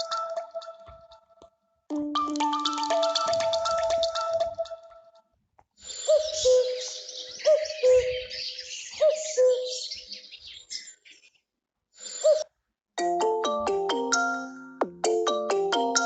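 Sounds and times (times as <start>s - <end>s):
mallet-like ringtone melody: 0.0s - 1.2s, 1.9s - 5.1s, 13.0s - 16.0s
birdsong ringtone chirping: 2.2s - 4.9s, 5.9s - 11.2s, 13.0s - 16.0s.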